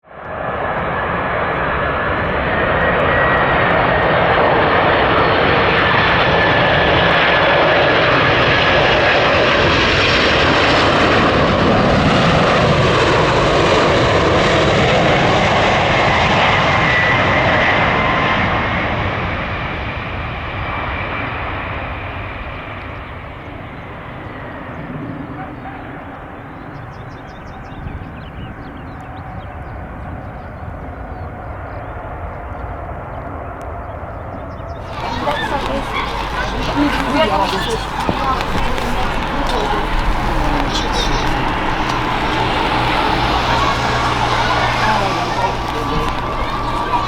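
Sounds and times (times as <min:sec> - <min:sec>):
jet engines roaring: 0:00.4 - 0:25.9, 0:34.8 - 0:47.0
faint engine whine: 0:34.8 - 0:47.0.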